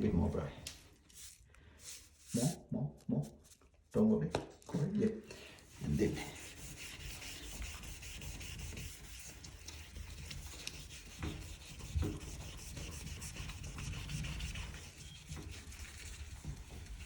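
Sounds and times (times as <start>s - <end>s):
sponge scrubbing glass: 1.2s - 3.4s, 5.7s - 17.0s.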